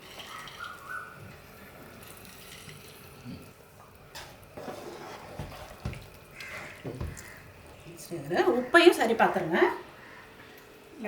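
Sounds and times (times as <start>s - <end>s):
juice trickling into a pot: 0.0s - 7.8s.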